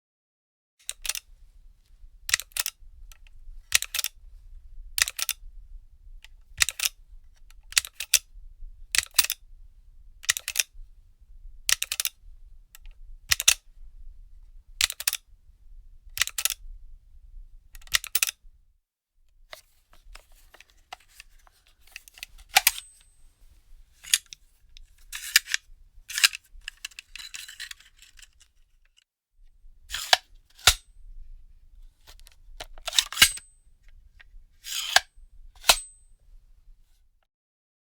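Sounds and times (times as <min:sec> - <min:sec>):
magazine loading metallic clicks: 0:00.9 - 0:01.2, 0:02.3 - 0:02.7, 0:03.7 - 0:04.1, 0:05.0 - 0:05.4, 0:06.6 - 0:07.0, 0:09.0 - 0:09.4, 0:10.2 - 0:10.7, 0:11.7 - 0:12.1, 0:12.8 - 0:13.6, 0:14.8 - 0:15.2, 0:16.2 - 0:16.6, 0:17.8 - 0:18.4, 0:20.3 - 0:23.3, 0:24.0 - 0:24.4, 0:25.0 - 0:28.5, 0:29.9 - 0:31.0, 0:32.6 - 0:33.6, 0:34.6 - 0:36.0.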